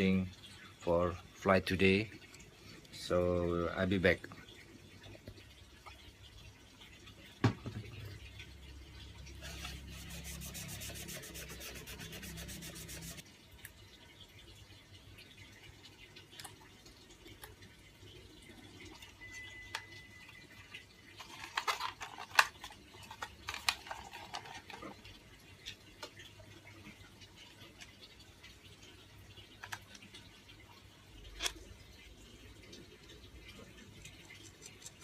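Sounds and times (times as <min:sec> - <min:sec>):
hands handling plastic parts: 0:21.2 - 0:25.0.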